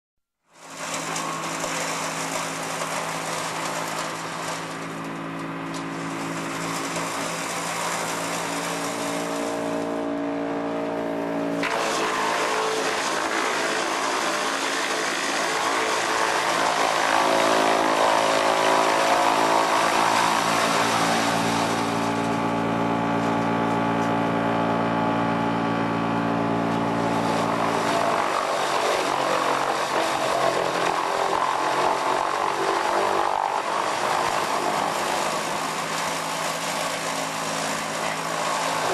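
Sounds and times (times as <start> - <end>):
wood chipper running: 0.4 - 38.9.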